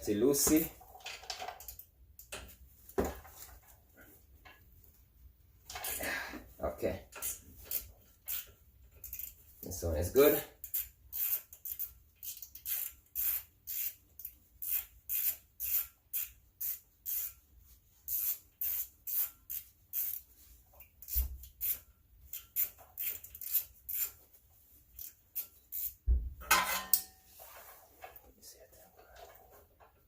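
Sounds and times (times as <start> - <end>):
hand ratchet clicking: 7.1 - 9.6, 10.6 - 17.4, 18.1 - 24.2, 24.9 - 26.0.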